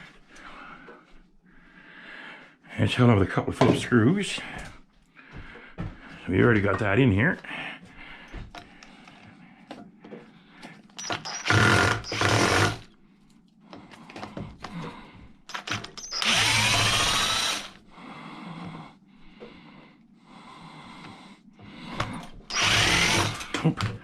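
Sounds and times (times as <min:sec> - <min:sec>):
power drill whirring: 0:11.0 - 0:13.0, 0:15.5 - 0:17.8, 0:21.9 - 0:23.9.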